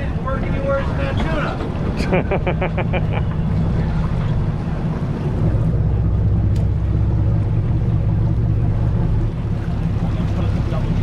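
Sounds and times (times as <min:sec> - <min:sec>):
boat engine droning: 0:00.0 - 0:11.0.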